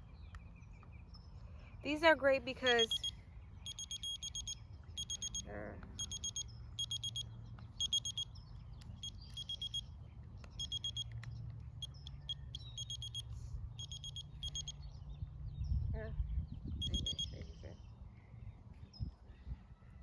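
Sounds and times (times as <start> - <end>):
kitchen timer beeping: 2.6 - 3.1, 3.7 - 7.2, 7.8 - 8.3, 9.0 - 9.9, 10.6 - 11.2, 11.8 - 14.8, 16.8 - 17.4.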